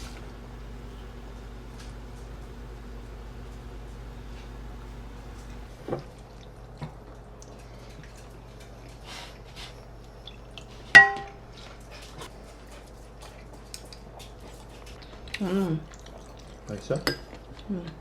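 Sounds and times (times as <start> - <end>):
faint steady hum: 0.0 - 18.0
tableware clinking: 11.0 - 11.4, 17.0 - 17.3.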